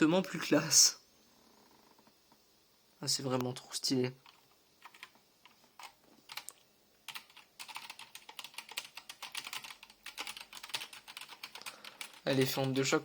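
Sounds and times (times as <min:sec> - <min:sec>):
mechanical keyboard keystrokes: 0:04.2 - 0:12.8.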